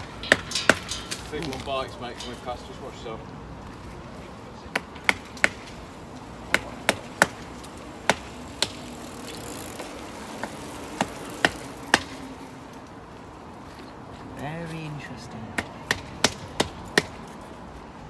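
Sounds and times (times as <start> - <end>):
sharp taps on metal: 0.0 - 2.7, 4.7 - 5.8, 6.5 - 8.8, 15.6 - 17.4.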